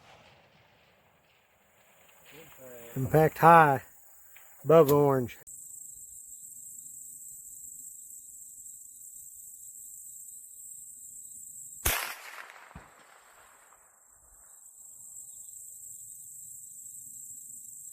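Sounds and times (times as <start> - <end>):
insects buzzing: 1.7 - 11.9, 13.8 - 17.9
faint gunshot report: 11.8 - 13.8
rifle shot: 11.8 - 14.0.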